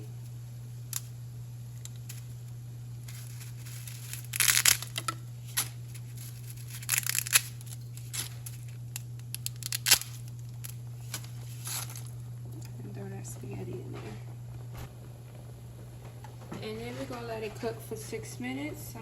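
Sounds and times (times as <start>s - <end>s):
steady low hum: 0.0s - 19.0s
dry spaghetti snapping: 1.7s - 12.7s.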